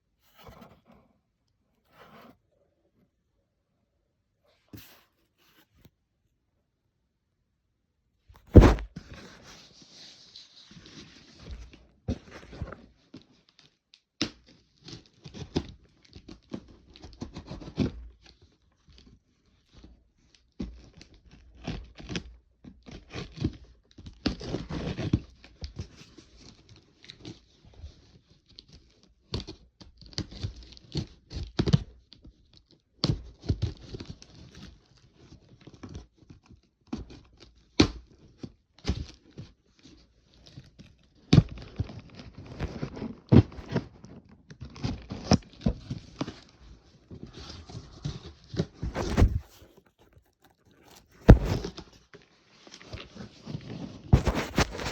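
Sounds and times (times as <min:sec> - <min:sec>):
packaging tearing and crinkling: 0:49.0 - 0:51.8, 0:54.2 - 0:54.9.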